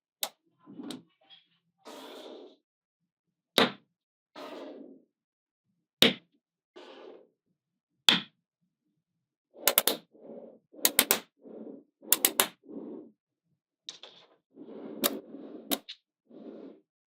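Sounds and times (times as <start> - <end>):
magnetic balls snapping together: 9.6 - 10.0.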